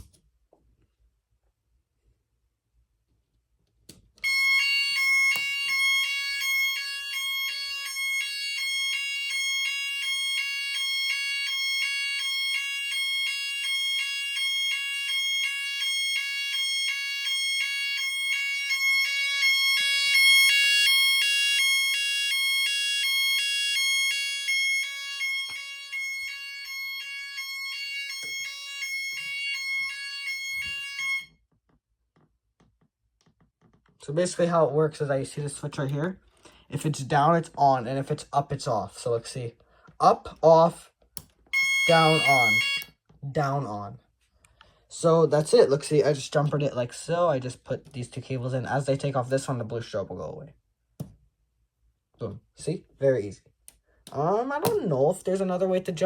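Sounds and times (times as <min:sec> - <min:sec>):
fire alarm siren pulsing: 0:04.2 - 0:31.4, 0:41.5 - 0:43.0.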